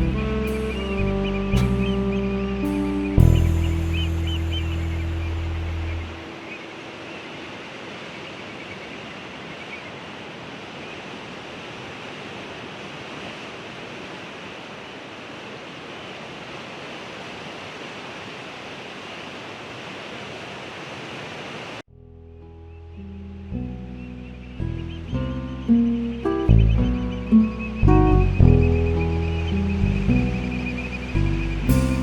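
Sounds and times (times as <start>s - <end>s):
ocean surf rushing: 0.0s - 21.8s.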